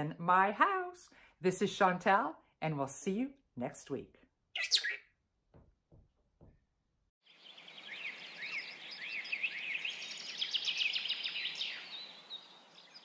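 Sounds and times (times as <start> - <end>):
small birds chirping and singing: 4.6 - 5.1, 7.2 - 13.0.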